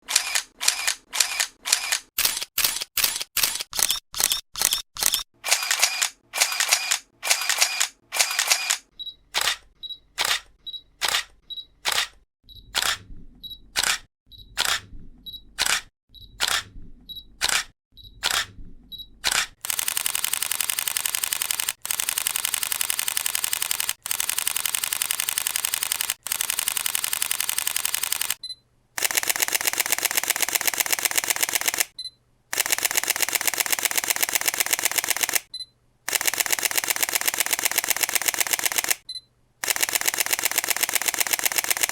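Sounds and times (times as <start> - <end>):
rapid shutter burst: 0.0 - 9.6, 19.3 - 28.4, 29.0 - 35.5, 36.1 - 39.0, 39.6 - 41.9
camera shutter clicks: 0.1 - 8.8, 9.4 - 11.3, 11.9 - 12.2, 12.8 - 13.0, 13.8 - 14.0, 14.6 - 14.8, 15.6 - 15.8, 17.4 - 18.5, 19.3 - 28.4, 29.0 - 35.5, 36.1 - 39.0, 39.6 - 41.9.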